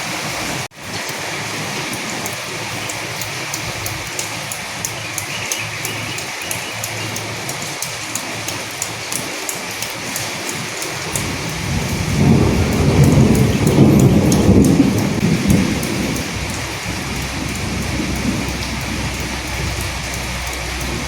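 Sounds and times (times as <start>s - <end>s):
raindrops ticking: 0.0s - 21.0s
steady rain: 0.0s - 21.0s
thunder rumbling: 11.0s - 21.0s.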